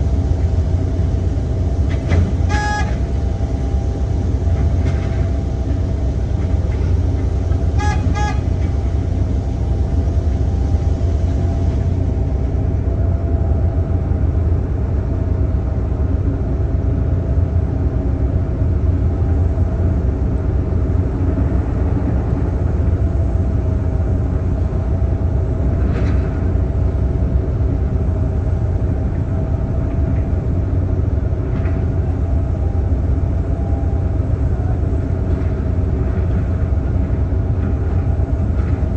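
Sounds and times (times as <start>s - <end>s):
diesel construction machinery running: 0.0s - 38.9s
vehicle horn toot: 2.5s - 3.1s, 7.7s - 8.6s.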